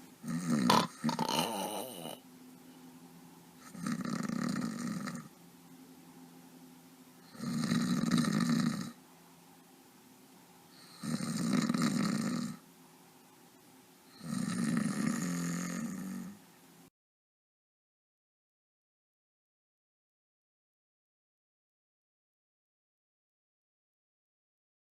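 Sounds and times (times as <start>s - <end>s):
person snoring: 0.2s - 2.2s, 3.6s - 5.3s, 7.3s - 9.0s, 10.8s - 12.6s, 14.1s - 16.4s.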